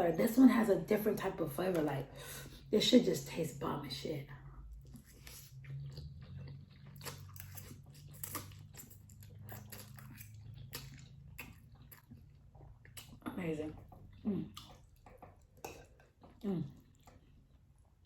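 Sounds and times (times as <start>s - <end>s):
wet chewing mouth clicks: 4.9s - 13.2s.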